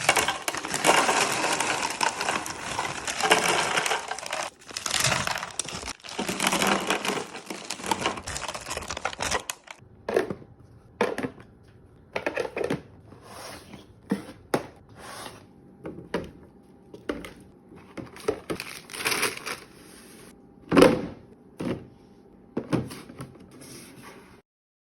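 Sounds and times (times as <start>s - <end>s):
plastic packaging crinkling: 0.0s - 9.8s, 18.6s - 19.8s
items knocking in a freezer: 0.0s - 11.5s.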